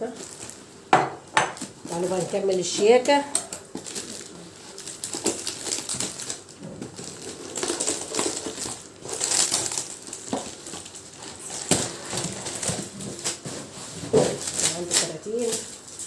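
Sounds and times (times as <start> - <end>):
packaging rustling and crinkling: 0.0 - 0.9, 1.5 - 16.0.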